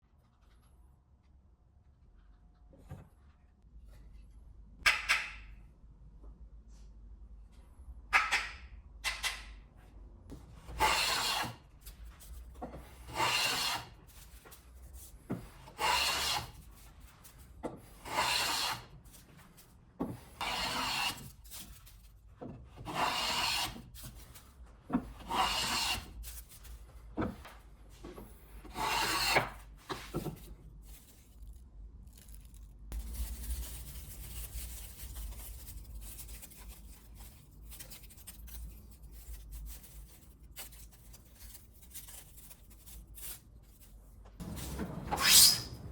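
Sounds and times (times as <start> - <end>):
hand tool scraping wood: 10.8 - 11.6, 12.8 - 14.0, 15.6 - 16.6, 17.9 - 18.9, 20.1 - 21.3, 22.8 - 24.1, 25.1 - 26.2, 28.7 - 30.2, 44.4 - 45.8.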